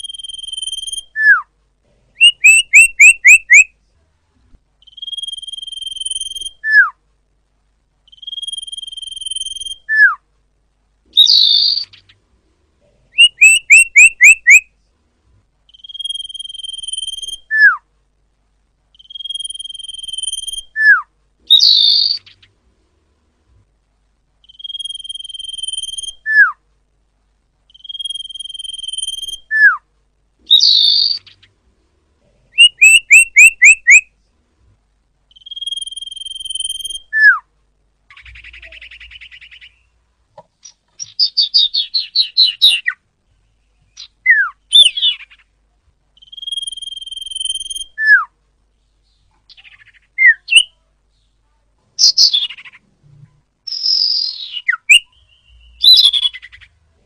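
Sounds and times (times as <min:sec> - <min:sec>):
bird trills: 0:00.0 - 0:01.4, 0:02.2 - 0:03.7, 0:04.8 - 0:06.9, 0:08.1 - 0:10.2, 0:11.1 - 0:12.2, 0:13.2 - 0:14.6, 0:15.7 - 0:17.8, 0:18.9 - 0:22.5, 0:24.4 - 0:26.5, 0:27.7 - 0:29.8, 0:32.6 - 0:34.1, 0:35.3 - 0:37.4, 0:40.6 - 0:43.0, 0:43.9 - 0:45.5, 0:46.2 - 0:48.2, 0:49.5 - 0:50.7, 0:53.7 - 0:56.7
bird whistling: 0:00.0 - 0:01.5, 0:02.2 - 0:03.7, 0:04.8 - 0:07.0, 0:08.1 - 0:10.2, 0:11.2 - 0:12.1, 0:13.2 - 0:14.6, 0:15.7 - 0:17.8, 0:19.0 - 0:22.4, 0:24.4 - 0:26.6, 0:27.7 - 0:29.8, 0:30.5 - 0:31.4, 0:32.6 - 0:34.1, 0:35.3 - 0:37.4, 0:40.6 - 0:43.0, 0:44.0 - 0:45.4, 0:46.2 - 0:48.3, 0:49.5 - 0:50.7, 0:53.7 - 0:56.6
harsh buzzy bird call: 0:02.2 - 0:03.7, 0:13.2 - 0:14.6, 0:32.5 - 0:34.0.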